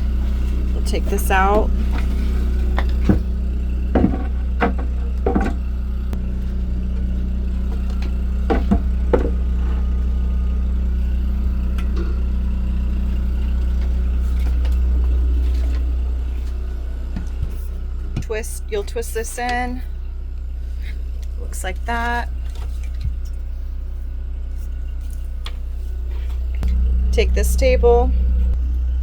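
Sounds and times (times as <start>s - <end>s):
knocks and clunks: 0.0s - 6.2s, 6.9s - 10.0s
generator droning: 0.0s - 29.0s.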